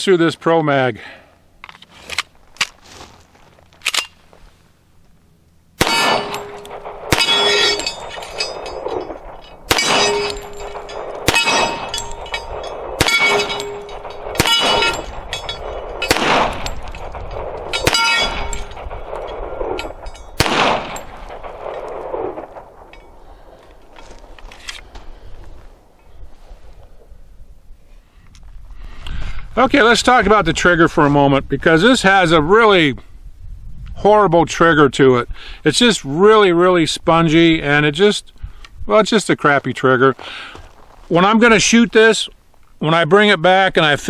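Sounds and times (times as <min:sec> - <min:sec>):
ringing metallic tone: 0:05.8 - 0:22.2
pistol shots: 0:05.8 - 0:23.3.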